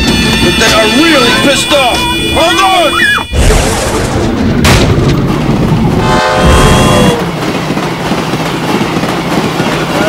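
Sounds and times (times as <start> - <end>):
horn-like blaring tone: 0.0 - 3.4, 6.0 - 7.3.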